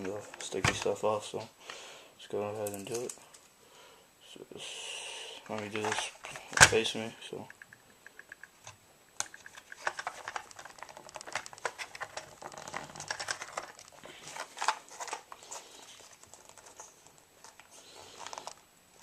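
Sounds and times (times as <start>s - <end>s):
sticker peeling and crinkling: 9.2s - 19.0s.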